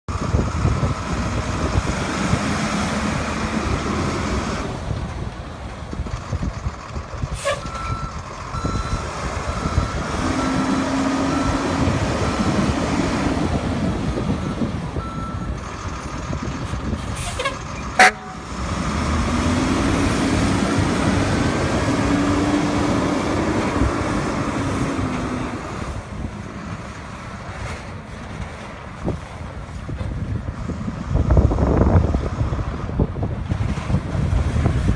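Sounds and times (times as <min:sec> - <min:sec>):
fire truck engine running: 0:00.1 - 0:34.9
reversing alarm beeping: 0:07.6 - 0:12.3, 0:14.4 - 0:15.6.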